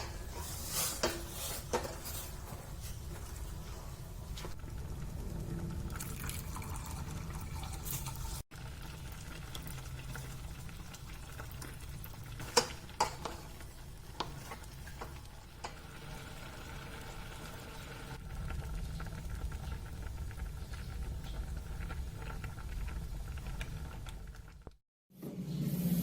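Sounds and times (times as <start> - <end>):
liquid sloshing and pouring: 4.1 - 8.4.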